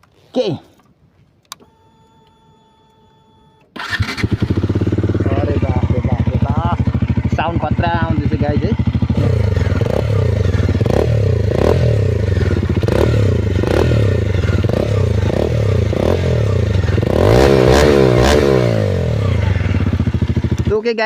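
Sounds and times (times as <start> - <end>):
motorcycle engine revving: 3.8 - 20.9.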